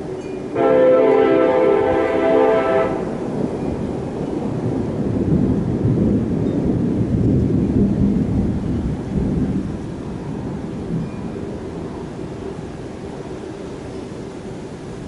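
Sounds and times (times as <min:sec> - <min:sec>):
rain falling: 0:00.0 - 0:15.0
low rolling thunder: 0:00.6 - 0:15.0.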